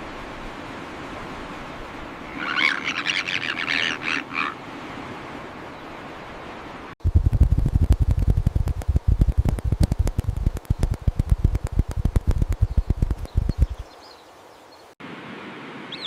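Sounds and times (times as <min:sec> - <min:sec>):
low fluttering rumble: 0:07.0 - 0:13.8
bird chirping: 0:12.6 - 0:15.0.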